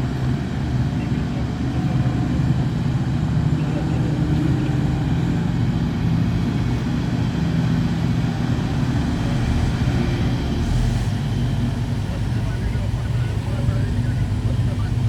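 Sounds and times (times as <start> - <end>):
heavy diesel engine droning: 0.0 - 15.0.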